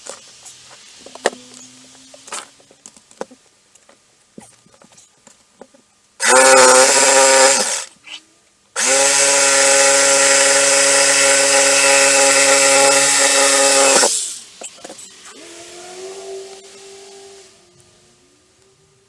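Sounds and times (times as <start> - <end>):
electric power tool motor: 6.2 - 7.9, 8.8 - 14.4.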